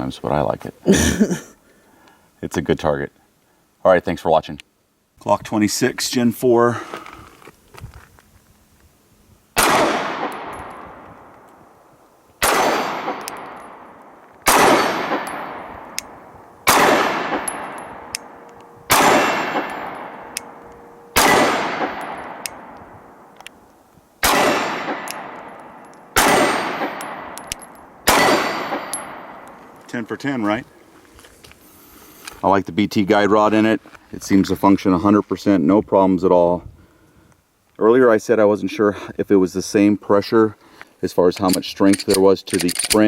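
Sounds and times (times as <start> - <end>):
pistol shots echoing: 9.6 - 11.5, 12.4 - 23.4, 24.2 - 29.8.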